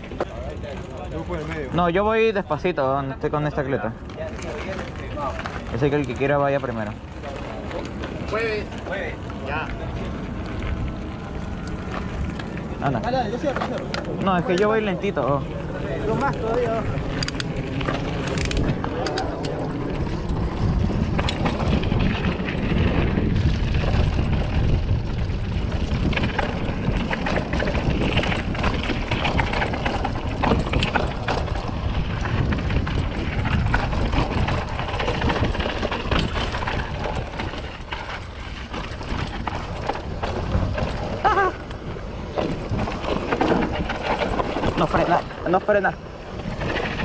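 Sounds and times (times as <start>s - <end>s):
bike rattling over bumps: 0.0s - 47.0s
bike tyres rolling on dirt: 0.0s - 47.0s
wind rumbling on microphone: 0.0s - 47.0s.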